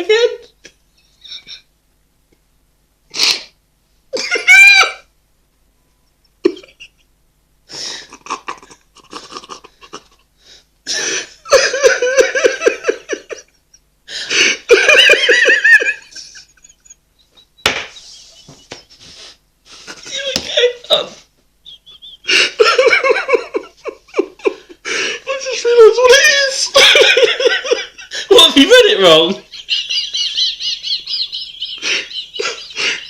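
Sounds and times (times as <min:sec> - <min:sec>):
breathy giggles: 0:07.8 - 0:10.3, 0:31.0 - 0:33.0
people laughing: 0:07.8 - 0:10.3, 0:11.2 - 0:13.7, 0:14.4 - 0:21.1, 0:21.7 - 0:25.1, 0:26.1 - 0:33.0.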